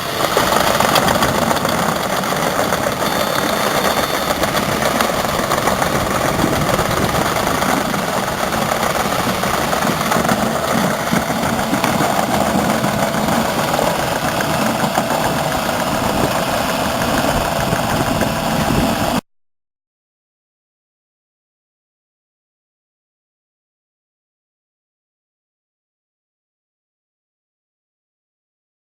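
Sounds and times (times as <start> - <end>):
excavator diesel engine running: 0.0 - 19.2.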